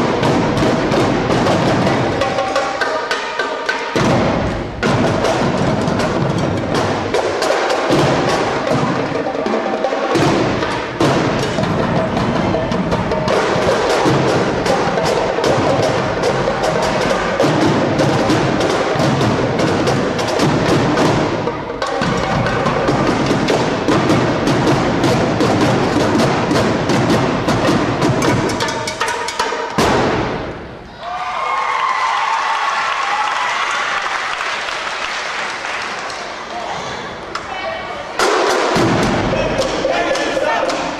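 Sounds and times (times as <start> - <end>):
drum squad playing: 0.0 - 31.0, 38.0 - 40.9
bass drums: 4.0 - 7.3, 10.2 - 28.8, 38.2 - 40.9.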